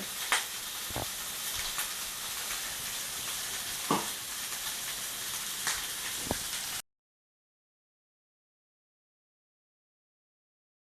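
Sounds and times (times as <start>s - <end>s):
steaks sizzling in a frying pan: 0.0s - 6.8s.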